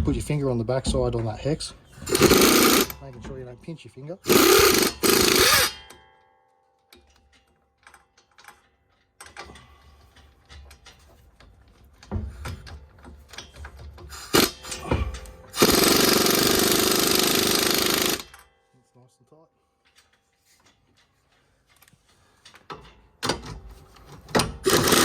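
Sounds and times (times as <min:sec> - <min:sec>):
impact gun hammering: 0:02.0 - 0:03.4, 0:04.2 - 0:06.0, 0:14.3 - 0:18.4, 0:24.6 - 0:25.0.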